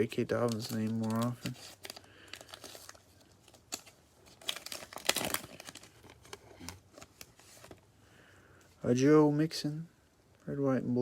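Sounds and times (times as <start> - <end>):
cards being handled: 0.0 - 7.8
plastic wrapper crinkling: 0.0 - 7.9.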